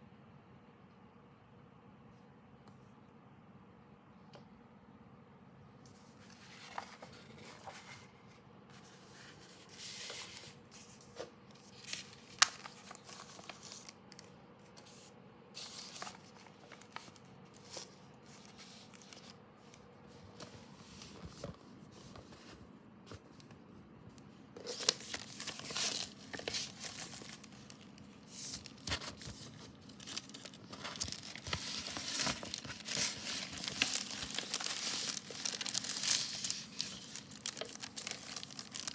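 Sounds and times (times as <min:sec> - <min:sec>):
packaging crinkling and tearing: 0:11.6 - 0:15.0, 0:15.6 - 0:19.4, 0:24.6 - 0:38.9.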